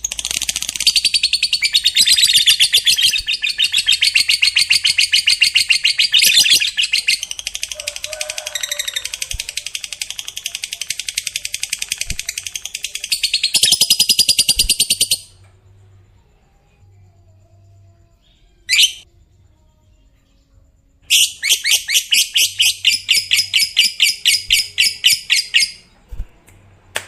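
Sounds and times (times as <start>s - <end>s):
lovebird chattering trill: 0.0s - 15.3s, 21.1s - 25.9s.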